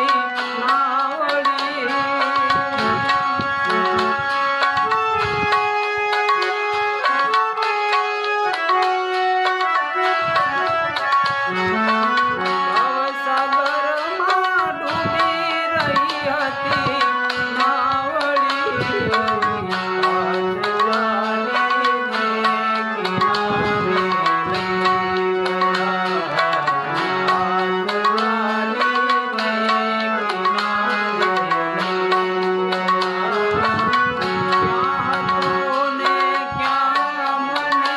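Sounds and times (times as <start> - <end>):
devotional melody: 0.0 - 37.9
tabla rhythm: 0.0 - 37.9.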